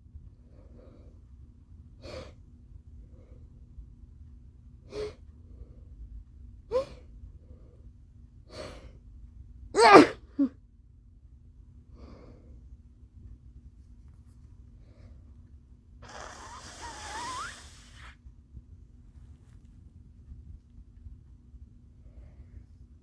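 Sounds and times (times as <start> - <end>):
loud sneeze: 9.8 - 10.2, 16.0 - 18.1
quiet breath: 11.9 - 12.8, 22.0 - 22.9
short catching gasps: 16.0 - 18.2.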